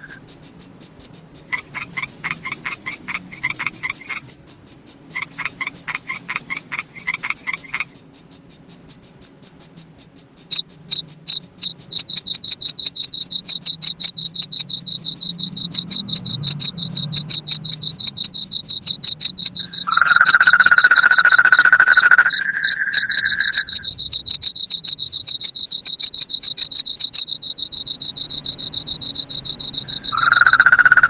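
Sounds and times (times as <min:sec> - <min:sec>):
crickets chirping: 0:00.0 - 0:31.0
steady insect trill: 0:00.0 - 0:31.0
lower pulsed calls: 0:10.5 - 0:31.0.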